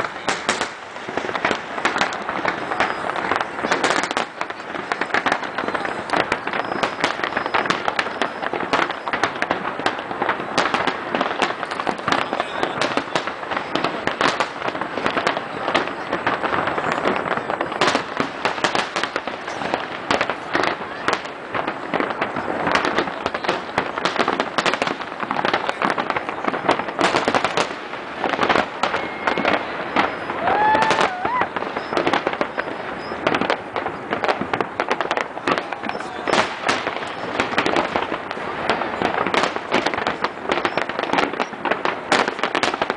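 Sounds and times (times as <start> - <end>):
fireworks bangs and crackles: 0.0 - 42.9
onlookers' voices: 0.0 - 42.9.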